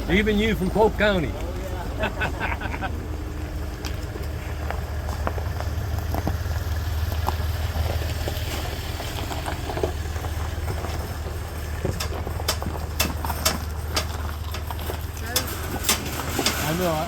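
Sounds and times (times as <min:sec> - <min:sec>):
vehicle engine idling: 0:00.0 - 0:17.0
small clicks and knocks: 0:11.8 - 0:16.6.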